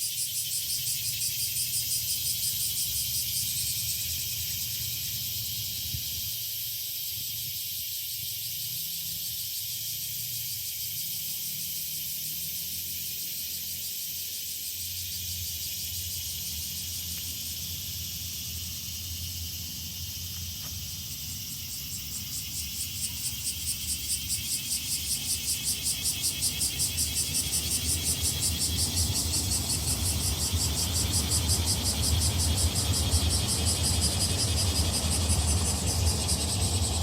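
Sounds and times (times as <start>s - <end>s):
cicadas hissing: 0.0s - 37.0s
pulsing cicada call: 0.0s - 37.0s
constant low hum: 14.6s - 37.0s.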